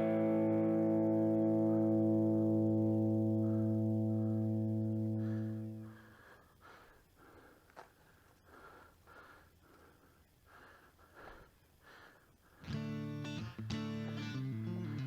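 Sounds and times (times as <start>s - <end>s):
guitar chord: 0.0s - 6.0s, 12.6s - 15.0s
person breathing hard: 3.3s - 12.9s.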